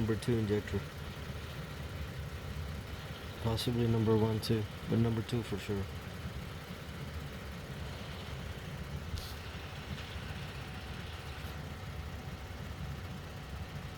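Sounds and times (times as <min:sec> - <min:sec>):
car engine idling: 0:00.0 - 0:13.9.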